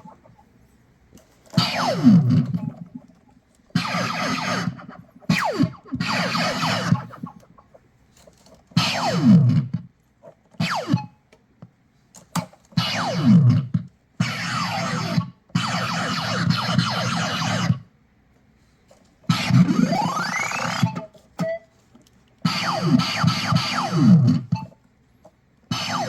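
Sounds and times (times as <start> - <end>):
distorted electronic buzzing bursts: 22.5 - 24.6, 25.7 - 26.0.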